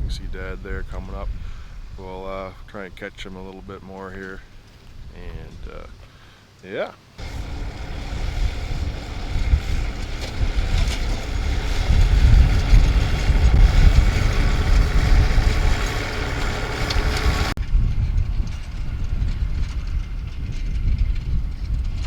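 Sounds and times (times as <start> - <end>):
wind rumbling on microphone: 0.0 - 6.0, 7.2 - 22.0
tractor engine running: 7.2 - 17.6.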